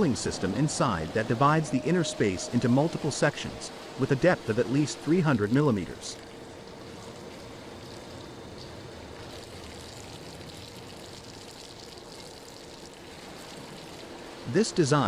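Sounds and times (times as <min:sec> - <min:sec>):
steady rushing noise: 0:00.0 - 0:06.2
faint steady hum: 0:00.0 - 0:15.0.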